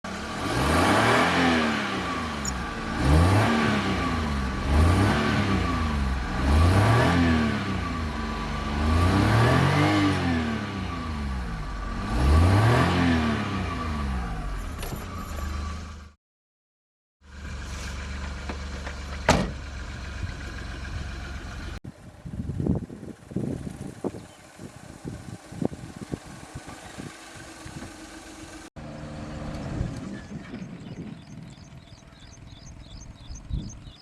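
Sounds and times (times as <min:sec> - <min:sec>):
car engine revving: 0:00.1 - 0:16.2.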